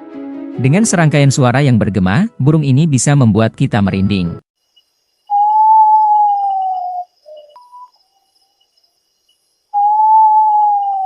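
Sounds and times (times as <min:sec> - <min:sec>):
insect trill: 0:04.6 - 0:11.0
bird whistling call: 0:05.3 - 0:07.9, 0:09.7 - 0:11.0.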